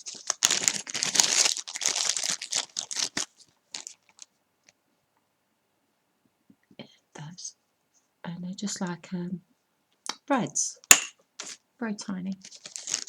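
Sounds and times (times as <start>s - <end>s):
packaging crinkling and rustling: 0.0s - 4.8s, 11.4s - 11.6s, 12.4s - 13.0s.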